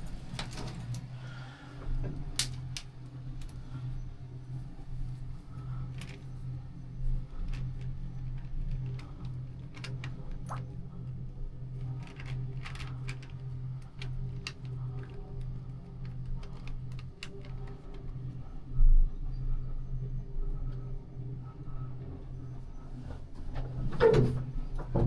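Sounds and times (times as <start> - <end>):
light clicks and ticks: 2.1 - 3.6, 11.7 - 18.4.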